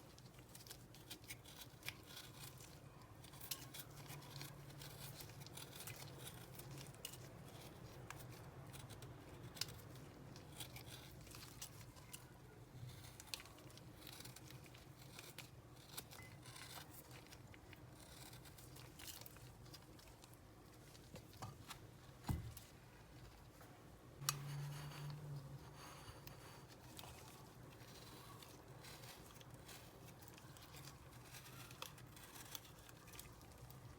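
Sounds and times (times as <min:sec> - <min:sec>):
cutting and scraping food: 0:00.0 - 0:21.6, 0:24.2 - 0:33.9
low steady hum: 0:00.0 - 0:33.9.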